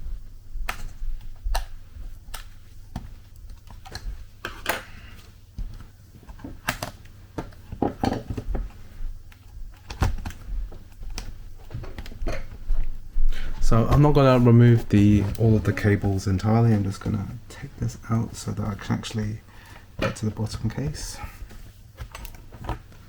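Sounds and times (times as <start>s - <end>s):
laptop parts clicking and tapping: 0.6s - 12.6s.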